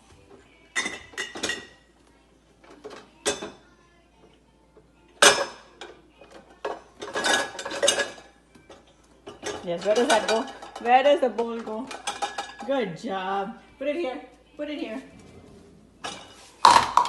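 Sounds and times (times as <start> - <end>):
dishes and cutlery clattering: 0.7 - 2.0, 2.6 - 3.7, 5.1 - 12.9, 15.3 - 17.0.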